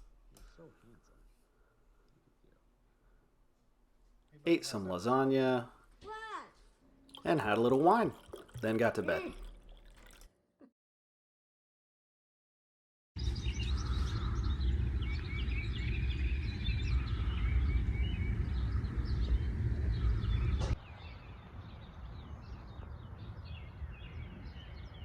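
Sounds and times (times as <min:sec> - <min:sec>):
low rumble: 0:13.2 - 0:25.0
small birds chirping: 0:13.2 - 0:25.0.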